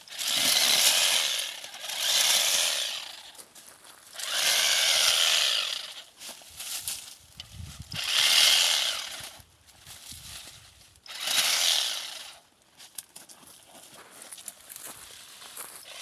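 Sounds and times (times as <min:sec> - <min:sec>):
cutting machine running: 0:00.1 - 0:03.2, 0:04.2 - 0:05.9.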